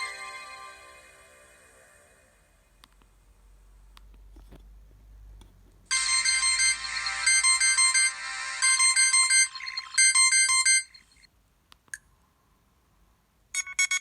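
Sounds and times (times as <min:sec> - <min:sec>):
phone ringtone melody: 0:00.0 - 0:02.0, 0:05.9 - 0:11.2.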